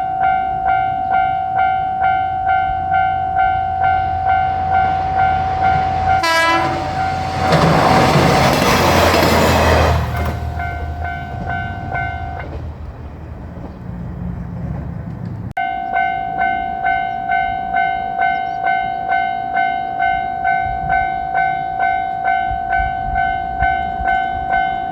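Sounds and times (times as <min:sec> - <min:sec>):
train rushing by: 0:00.0 - 0:15.5
diesel train engine rumbling: 0:00.0 - 0:24.9
train horn toot: 0:00.7 - 0:08.0.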